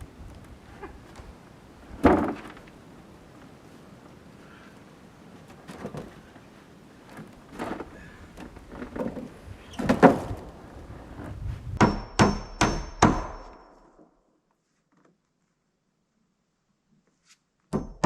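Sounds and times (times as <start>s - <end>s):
hammer blows on wood: 11.8s - 13.7s.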